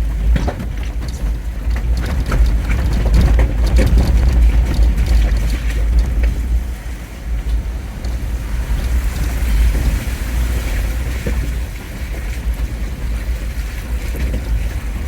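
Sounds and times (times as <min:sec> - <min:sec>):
engine and tyres rumbling: 0:00.0 - 0:15.0
road and water hiss: 0:04.4 - 0:15.0.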